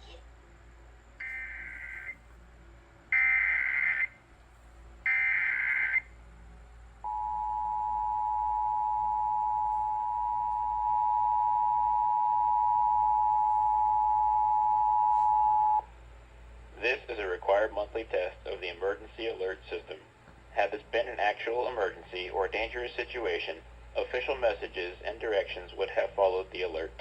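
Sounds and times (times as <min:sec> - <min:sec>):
data tone bursts: 0:01.2 - 0:02.2
two-tone attention signal: 0:07.1 - 0:15.9.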